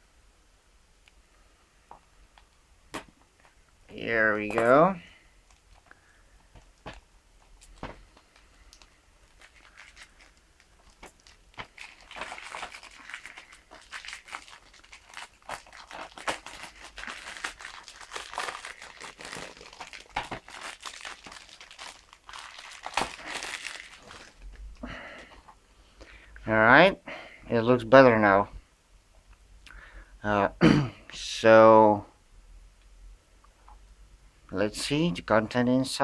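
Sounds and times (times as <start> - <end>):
shrink-wrap crinkling and tearing: 4.0 - 25.4.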